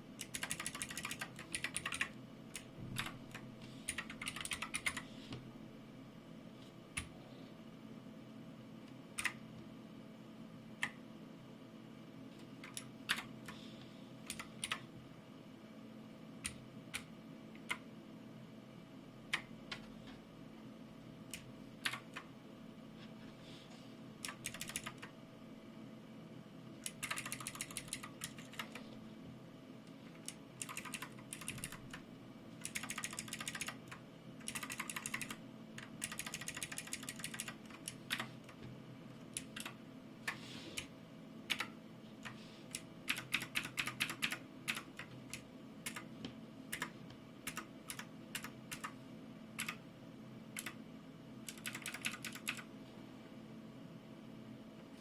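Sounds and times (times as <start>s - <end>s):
clicky mechanical keyboard typing: 0.2s - 5.0s, 12.6s - 13.6s, 14.3s - 14.8s, 21.3s - 22.3s, 24.2s - 25.2s, 26.8s - 28.8s, 30.2s - 32.0s, 32.6s - 38.3s, 39.3s - 40.9s, 41.5s - 46.1s, 46.7s - 49.0s, 49.6s - 49.8s, 50.6s - 50.8s, 51.5s - 52.7s.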